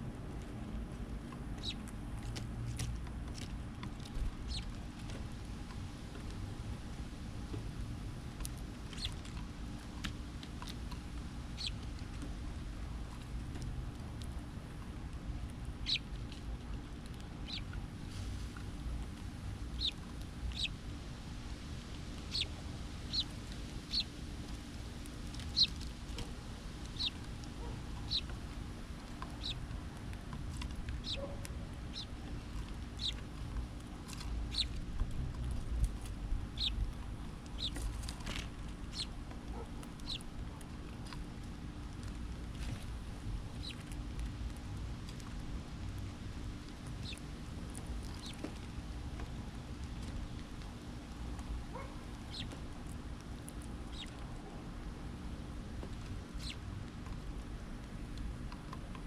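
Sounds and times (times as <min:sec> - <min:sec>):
low background rumble: 0:00.0 - 0:59.0
bird chip calls: 0:01.6 - 0:01.9, 0:04.5 - 0:04.7, 0:08.9 - 0:09.2, 0:11.6 - 0:11.8, 0:15.8 - 0:16.1, 0:17.4 - 0:17.8, 0:19.8 - 0:20.8, 0:22.3 - 0:24.1, 0:25.5 - 0:25.8, 0:27.0 - 0:28.3, 0:29.4 - 0:29.6, 0:31.0 - 0:32.2, 0:33.0 - 0:33.2, 0:34.5 - 0:34.8, 0:36.6 - 0:36.8, 0:37.5 - 0:37.8, 0:38.9 - 0:40.3, 0:43.6 - 0:43.8, 0:47.0 - 0:47.2, 0:48.1 - 0:48.4, 0:51.7 - 0:52.6, 0:53.9 - 0:54.2, 0:56.4 - 0:56.6.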